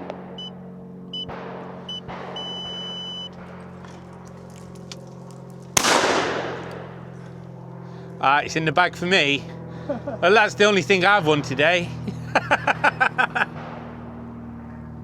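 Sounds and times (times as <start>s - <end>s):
steady low hum: 0.0s - 15.0s
shotgun shot: 1.3s - 2.5s, 5.8s - 7.0s
high electronic beeps: 1.9s - 3.3s.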